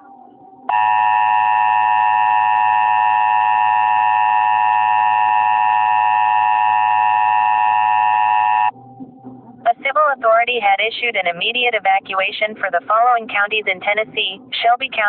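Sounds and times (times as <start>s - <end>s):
two-tone alert signal: 0.7s - 8.7s.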